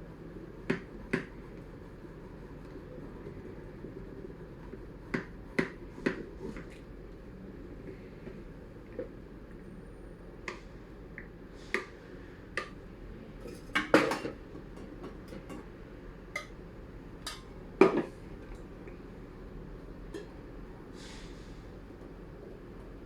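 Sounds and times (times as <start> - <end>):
dishes and utensils clinking: 13.4 - 15.7, 17.2 - 18.1.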